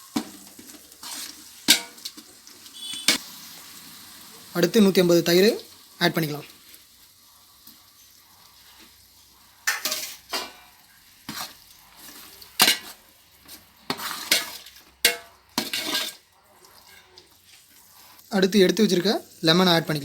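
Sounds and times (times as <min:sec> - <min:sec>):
spoon scraping cooking pot: 0:02.7 - 0:03.2, 0:08.0 - 0:18.2.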